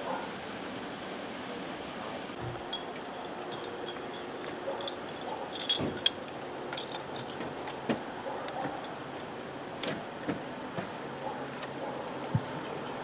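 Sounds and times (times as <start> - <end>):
steady background noise: 0.0 - 13.0
light metallic clinks and jingles: 2.4 - 8.0.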